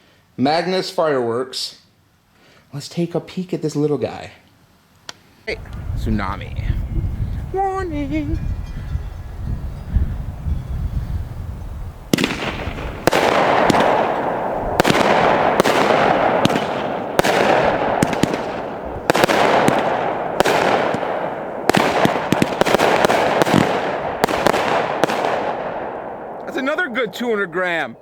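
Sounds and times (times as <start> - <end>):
firework shots: 12.1 - 27.4.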